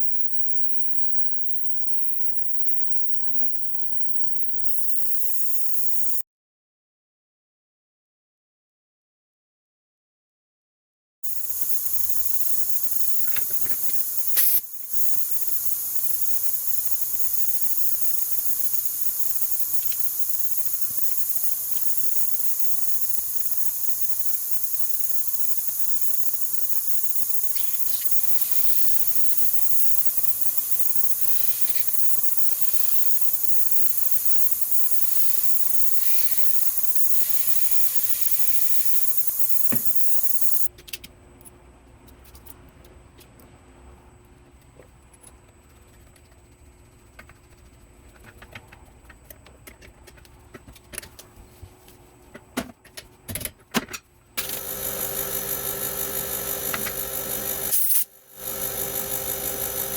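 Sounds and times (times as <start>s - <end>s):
high-pitched hiss: 0.0s - 6.2s, 11.2s - 40.7s, 54.4s - 59.9s.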